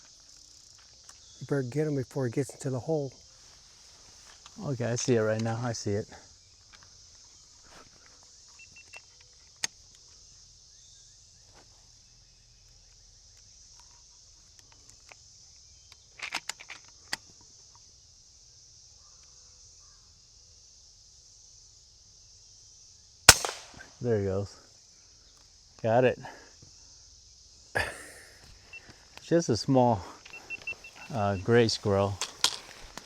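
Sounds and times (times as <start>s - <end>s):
insects buzzing: 0.0s - 33.0s
faint sharp clicks and rustles: 30.2s - 33.0s.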